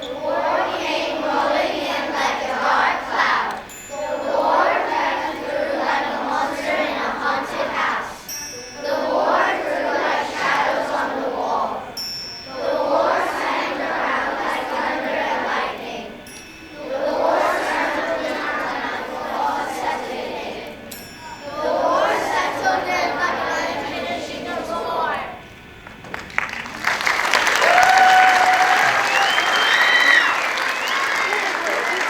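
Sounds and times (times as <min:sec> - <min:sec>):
children reciting in unison: 0:00.0 - 0:25.6
faint high chiming tones: 0:03.5 - 0:19.4, 0:20.0 - 0:23.8.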